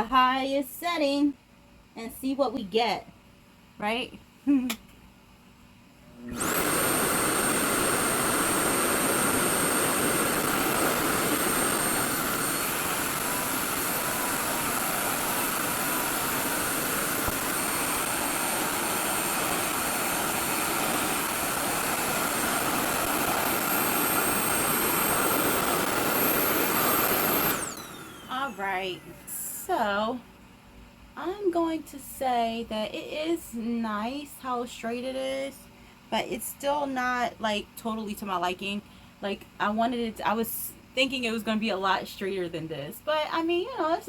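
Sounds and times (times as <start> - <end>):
hair dryer running: 6.1 - 30.0.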